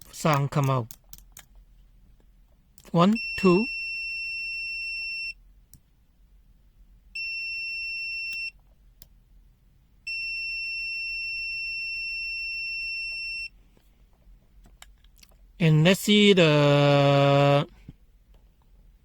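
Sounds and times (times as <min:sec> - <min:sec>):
multimeter continuity beeps: 0:03.0 - 0:05.4, 0:07.2 - 0:08.6, 0:10.1 - 0:13.6.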